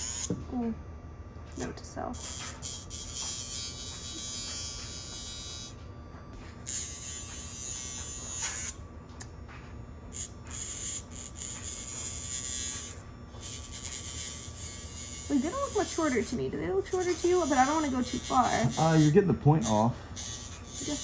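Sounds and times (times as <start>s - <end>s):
nail grinder motor hum: 0.0s - 0.4s, 10.2s - 21.0s.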